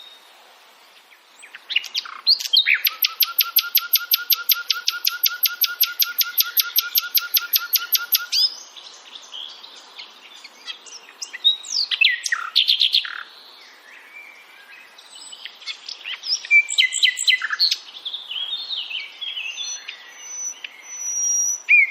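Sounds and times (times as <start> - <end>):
bird trilling and chirping: 1.8 - 8.6.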